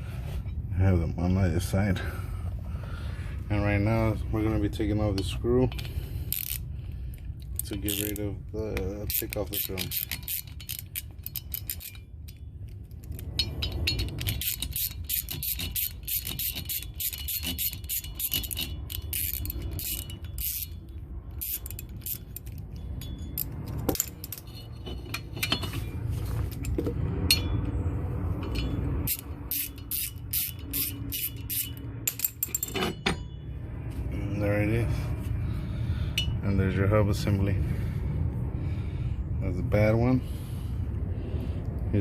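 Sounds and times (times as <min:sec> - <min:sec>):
ratchet wrench clicking: 0:05.1 - 0:25.9, 0:26.5 - 0:32.9
metal clinks and knocks: 0:09.0 - 0:33.6.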